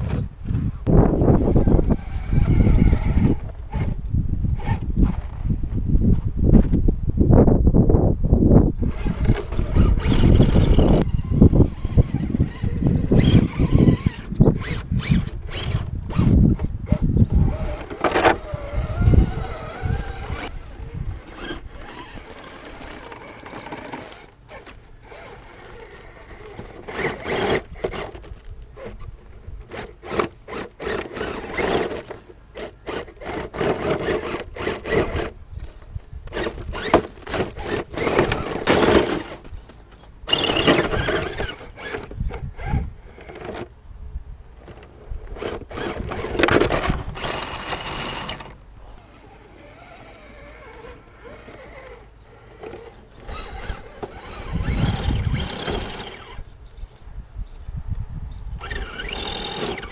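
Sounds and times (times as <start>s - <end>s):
electric motor whining: 0.9s - 5.4s, 8.7s - 43.7s, 44.6s - 57.7s, 58.3s - 59.9s.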